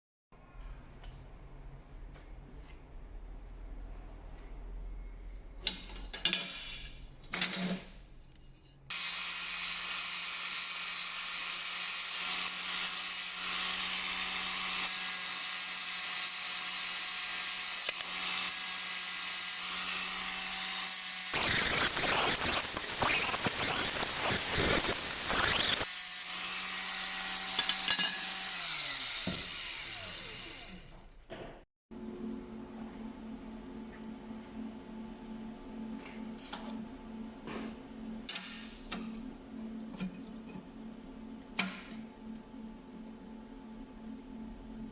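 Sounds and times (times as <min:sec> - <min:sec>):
electric saw running: 0:08.9 - 0:31.0
saw cutting through steel: 0:08.9 - 0:31.0
motor winding down: 0:21.2 - 0:31.0.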